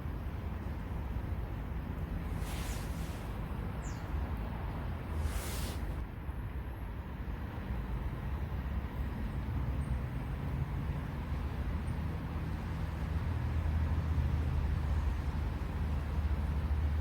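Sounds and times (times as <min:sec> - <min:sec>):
road traffic engine rumble: 0:00.0 - 0:06.0, 0:10.2 - 0:17.0.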